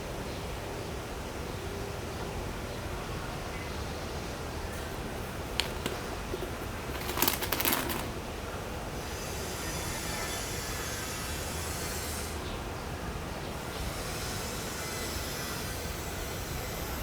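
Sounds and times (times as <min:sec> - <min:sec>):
crackly rustling: 0:04.6 - 0:08.3.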